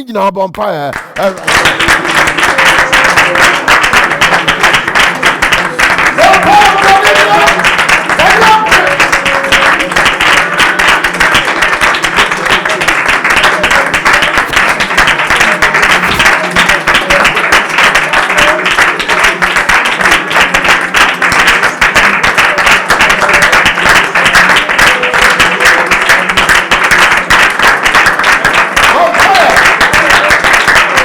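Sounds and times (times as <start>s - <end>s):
congregation clapping: 0.7s - 31.0s
music: 1.4s - 31.0s.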